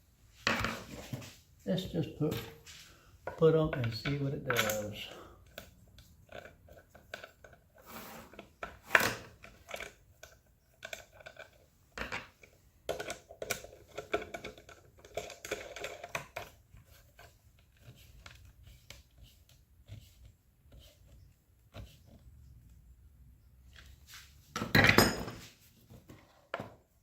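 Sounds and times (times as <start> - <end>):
small parts clicking and tapping: 3.3 - 7.6
short scrapes: 7.8 - 8.4.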